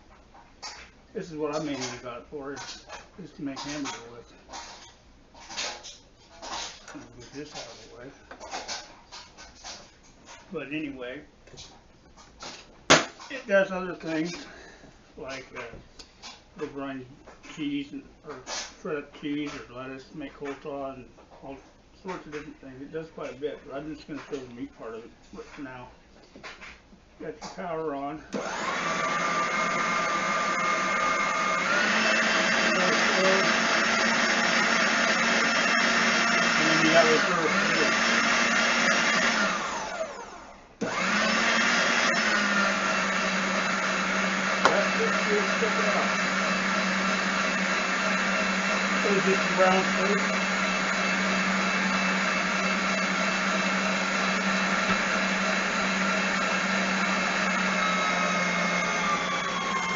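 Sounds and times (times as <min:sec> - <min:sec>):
meat grinder motor whining: 0:28.4 - 0:59.9.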